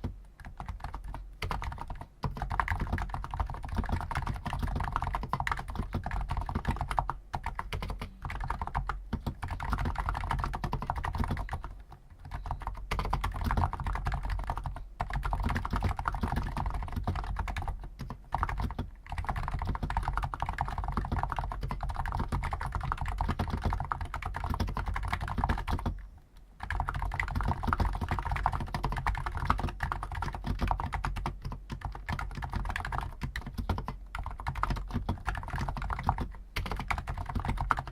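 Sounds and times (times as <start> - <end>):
fast keyboard typing: 0.0 - 26.0, 26.6 - 37.9.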